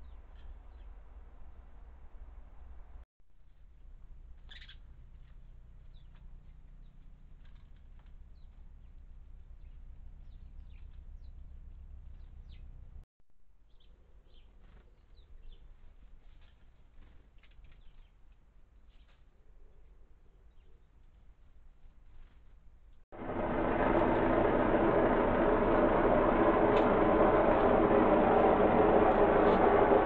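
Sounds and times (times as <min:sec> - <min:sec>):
small birds chirping: 0:04.4 - 0:07.1, 0:17.6 - 0:18.2
low steady rumble: 0:23.2 - 0:30.0.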